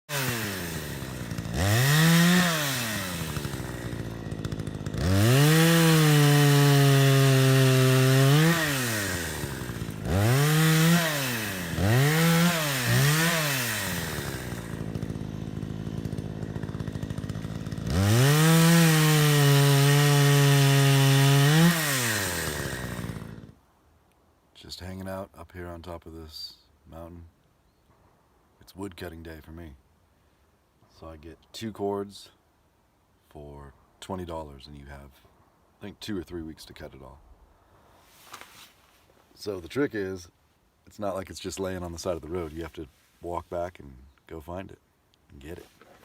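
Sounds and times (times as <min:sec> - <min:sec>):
chainsaw revving: 0:00.1 - 0:23.6.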